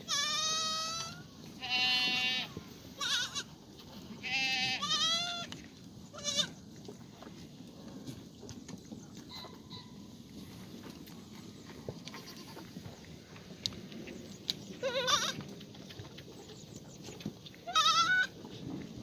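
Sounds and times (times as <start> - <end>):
goats bleating: 0.0 - 3.5, 4.2 - 6.6, 12.0 - 12.8, 14.8 - 15.5, 17.6 - 18.4.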